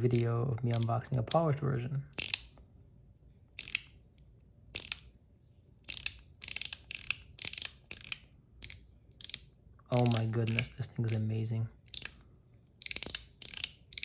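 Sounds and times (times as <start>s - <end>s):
fidget slider clicking: 2.1s - 2.5s, 3.6s - 4.0s, 4.7s - 5.1s, 5.8s - 11.2s, 11.9s - 12.2s, 12.8s - 14.0s.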